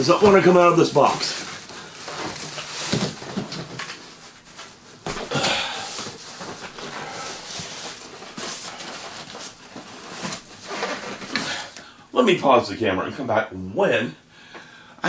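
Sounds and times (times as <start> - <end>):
packing rustling and scraping: 0.0 - 11.8.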